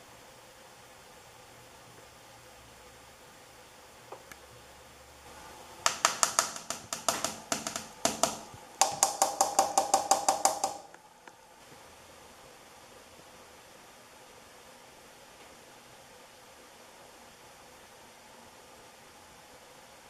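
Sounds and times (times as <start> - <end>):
faint steady hiss: 0.0 - 20.0
rapid sharp clicks: 5.8 - 11.4.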